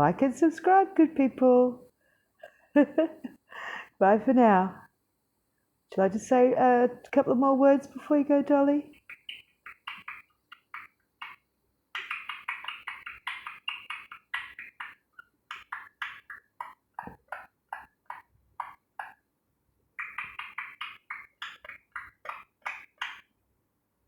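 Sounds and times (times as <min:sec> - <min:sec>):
parrot chattering: 0:08.8 - 0:11.4, 0:12.0 - 0:19.2, 0:20.0 - 0:23.3.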